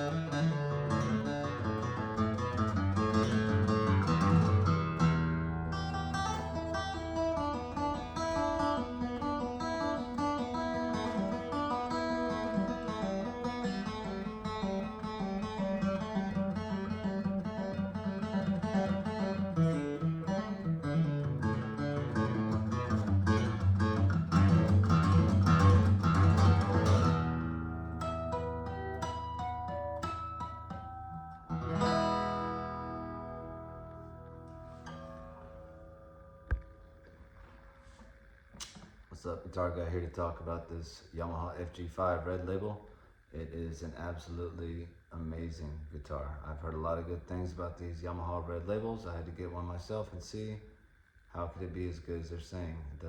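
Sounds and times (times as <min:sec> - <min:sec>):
acoustic guitar playing: 0:00.0 - 0:38.8.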